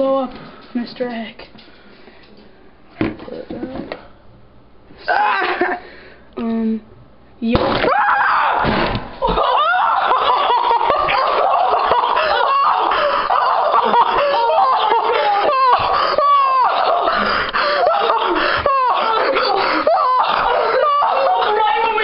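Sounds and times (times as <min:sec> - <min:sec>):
people laughing and shrieking: 0:05.0 - 0:05.8, 0:07.9 - 0:22.0.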